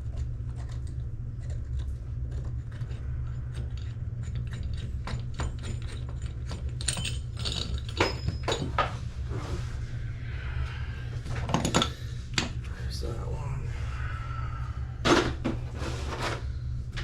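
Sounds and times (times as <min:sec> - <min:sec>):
steady low hum: 0:00.0 - 0:17.0
metal tools clinking and scraping: 0:03.7 - 0:09.0.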